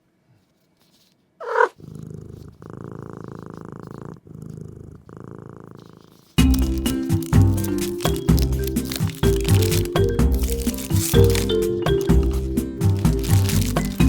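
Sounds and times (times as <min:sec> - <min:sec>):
cat purring: 0:00.2 - 0:14.0.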